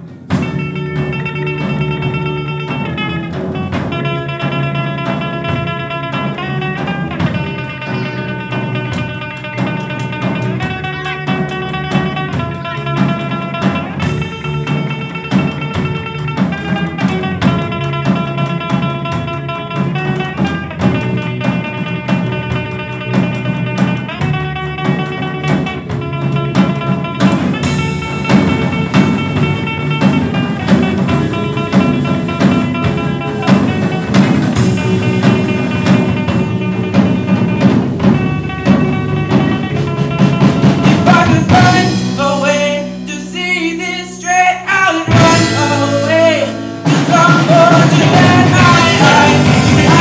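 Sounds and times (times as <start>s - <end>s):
drum kit: 0.0s - 50.0s
held guitar notes: 0.0s - 50.0s.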